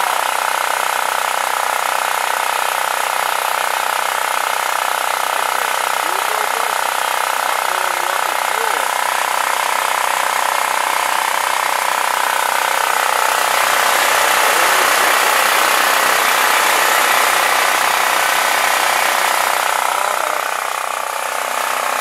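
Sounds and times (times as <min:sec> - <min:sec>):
generator engine running: 0:00.0 - 0:22.0.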